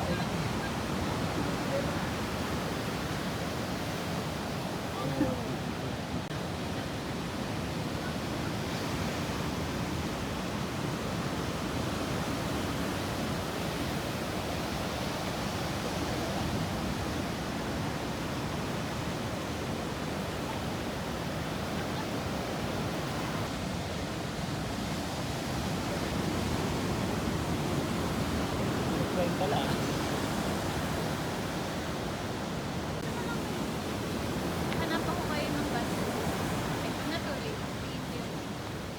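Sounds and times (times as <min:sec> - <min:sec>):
ocean surf breaking: 0:00.0 - 0:38.9.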